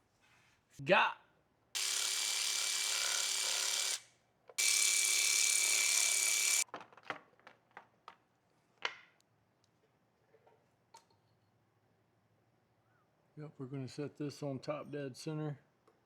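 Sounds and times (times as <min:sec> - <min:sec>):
handheld power tool running: 0:01.8 - 0:06.6.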